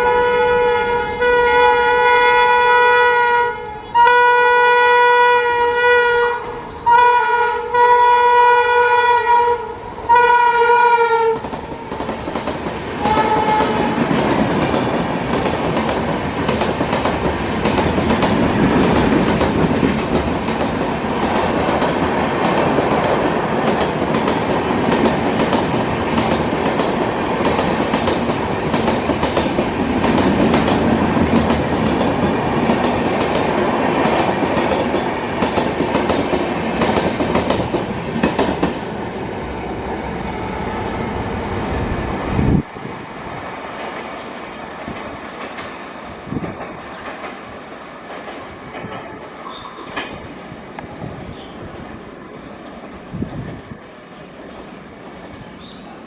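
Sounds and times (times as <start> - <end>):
locomotive horn honking: 0.0 - 11.4, 13.0 - 14.1
train wheels rushing on rail: 0.0 - 56.0.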